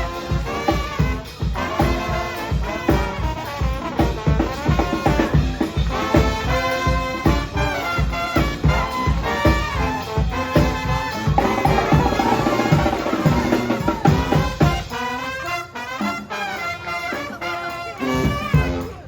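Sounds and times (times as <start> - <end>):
steady low drum beat: 0.0 - 15.1
brass band playing: 0.0 - 19.0.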